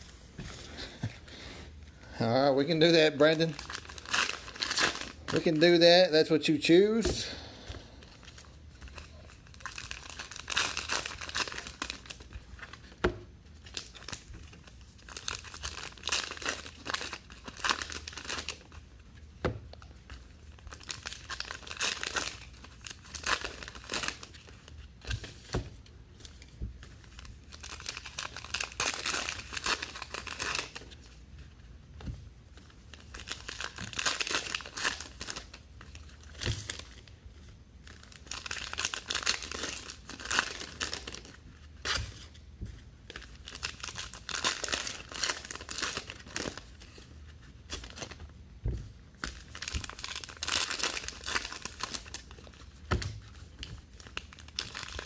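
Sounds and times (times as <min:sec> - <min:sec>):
card pack wrappers tearing: 0:02.6 - 0:07.3, 0:08.9 - 0:12.9, 0:13.7 - 0:18.8, 0:20.7 - 0:24.7, 0:27.1 - 0:31.0, 0:33.0 - 0:37.1, 0:37.9 - 0:42.3, 0:43.1 - 0:47.0, 0:49.2 - 0:52.6, 0:54.0 - 0:55.0.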